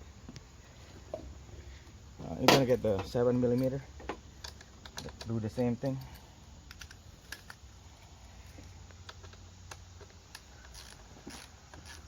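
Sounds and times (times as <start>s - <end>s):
ratchet clicking on bolts: 9.0s - 12.0s.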